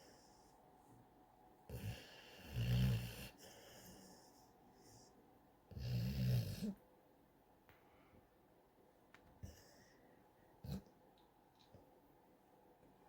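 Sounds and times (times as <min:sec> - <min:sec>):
dog snoring: 0:01.7 - 0:04.3, 0:05.7 - 0:06.8.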